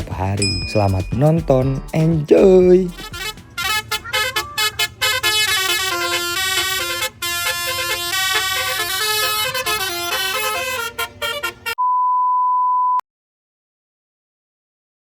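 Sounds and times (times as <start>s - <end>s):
steady high beep: 0.4s - 2.8s
multi-trumpet bus horn melody: 2.3s - 11.8s.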